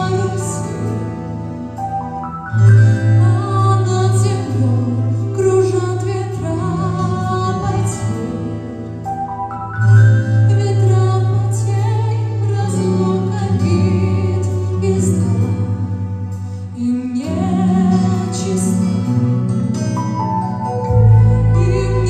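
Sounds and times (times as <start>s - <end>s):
instrumental backing with bass: 0.0s - 22.0s
woman singing gently: 21.0s - 22.0s.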